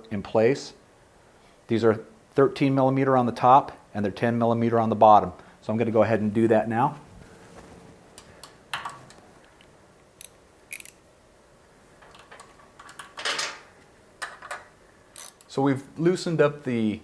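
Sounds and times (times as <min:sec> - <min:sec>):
sharp metallic clicks of tools: 0:10.2 - 0:11.0, 0:15.2 - 0:15.5.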